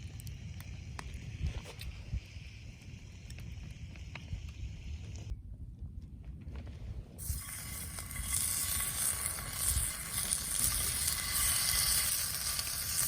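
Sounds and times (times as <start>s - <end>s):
food sizzling in hot pan: 7.2s - 13.0s.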